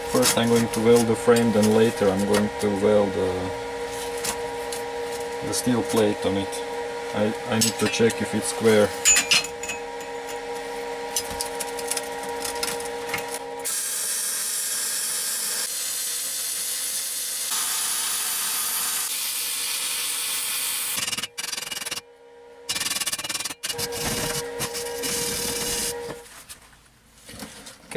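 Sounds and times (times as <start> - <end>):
machine hum: 0.0 - 16.0, 17.5 - 26.4
welding arc crackling hiss: 13.6 - 22.0, 23.9 - 26.0.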